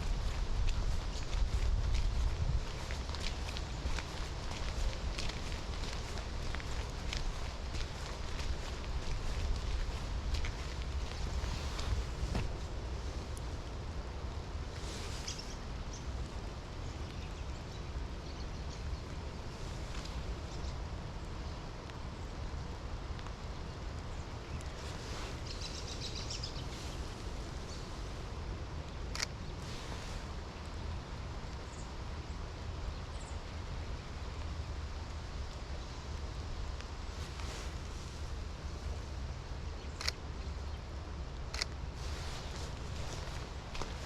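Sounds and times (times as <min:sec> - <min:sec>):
low rumble: 0:00.0 - 0:13.7
soft rain: 0:00.0 - 0:44.0
wind in trees: 0:00.0 - 0:44.0.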